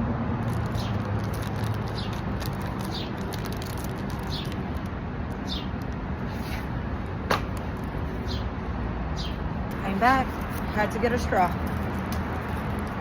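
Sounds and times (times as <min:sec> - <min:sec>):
small bird chirping: 0:00.7 - 0:01.1, 0:01.7 - 0:04.7, 0:05.4 - 0:05.8, 0:08.2 - 0:08.5, 0:09.2 - 0:09.4.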